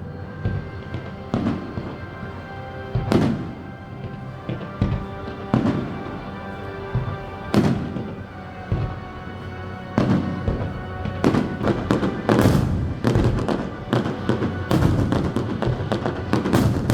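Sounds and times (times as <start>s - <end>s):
fireworks bursting with bangs: 0.0s - 6.2s, 6.9s - 9.1s, 10.0s - 16.9s
music playing: 0.0s - 16.9s
fireworks pops: 12.0s - 13.7s, 14.7s - 16.9s.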